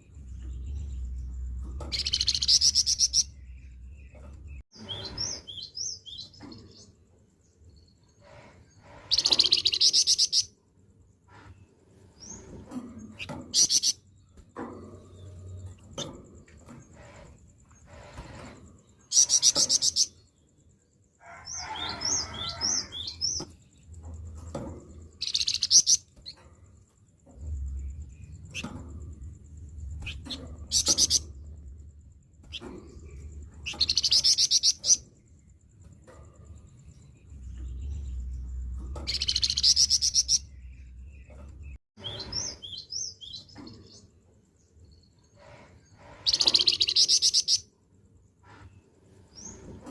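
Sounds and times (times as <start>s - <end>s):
songbird harsh rasping song: 0.0s - 14.4s, 15.0s - 23.9s, 25.1s - 26.4s, 27.4s - 35.7s, 36.7s - 49.8s
low rumble: 27.4s - 33.6s.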